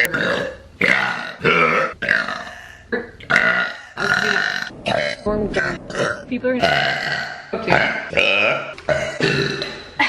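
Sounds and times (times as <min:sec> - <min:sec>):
woman burping: 0:00.0 - 0:05.1, 0:06.0 - 0:10.0.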